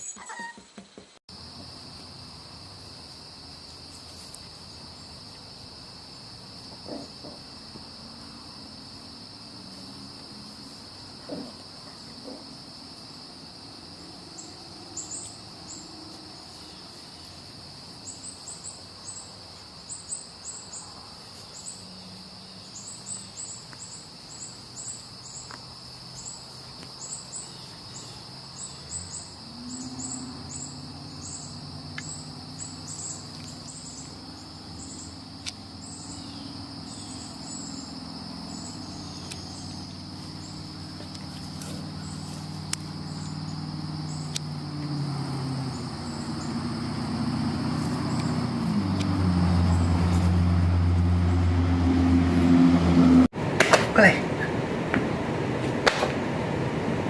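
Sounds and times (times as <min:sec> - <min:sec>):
high insect drone: 0:01.3 - 0:53.3
low engine hum: 0:28.6 - 0:57.0.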